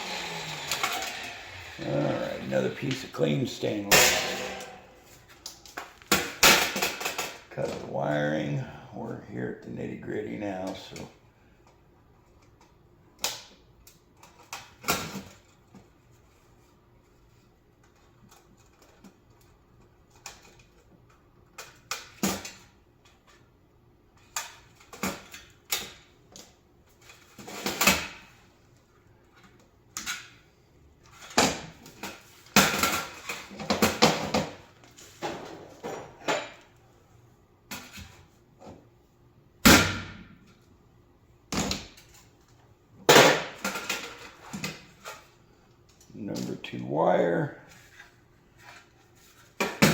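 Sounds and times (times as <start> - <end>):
metal parts clanking and rattling: 3.9 - 5.0.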